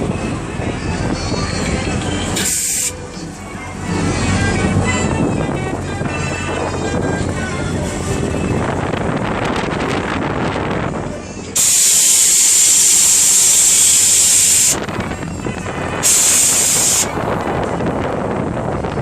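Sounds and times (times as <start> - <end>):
fairground ride noise: 0.0 - 19.0
hissing air blasts: 2.4 - 3.0, 11.6 - 15.0, 15.9 - 17.3.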